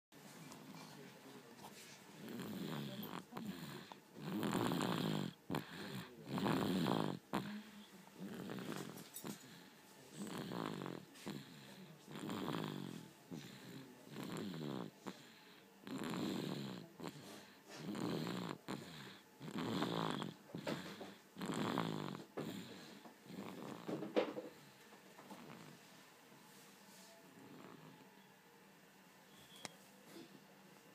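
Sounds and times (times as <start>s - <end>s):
baby snoring: 1.7s - 24.7s, 25.3s - 25.8s, 27.3s - 28.1s.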